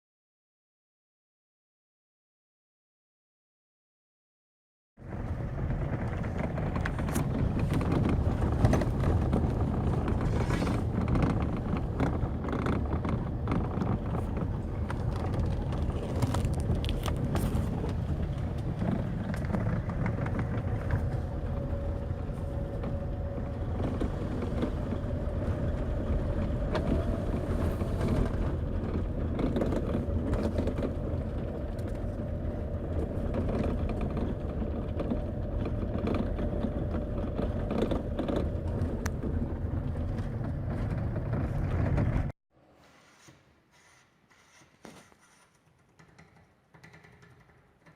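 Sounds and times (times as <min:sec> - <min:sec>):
van road rumble: 0:05.0 - 0:42.4.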